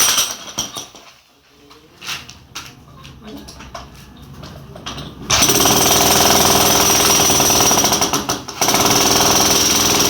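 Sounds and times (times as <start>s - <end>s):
jackhammer chipping concrete: 5.3s - 10.0s.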